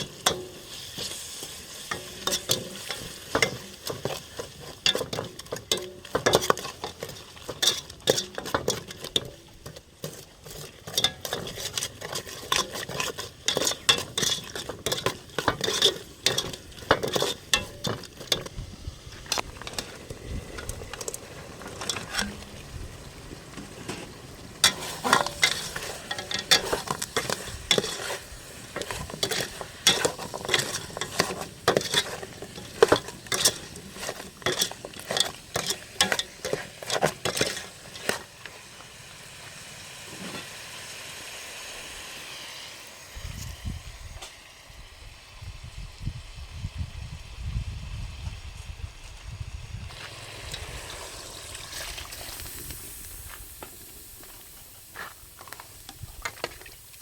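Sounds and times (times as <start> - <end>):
utensil scraping cooking pan: 0.0 - 38.8
food sizzling: 0.0 - 44.5, 49.9 - 57.0.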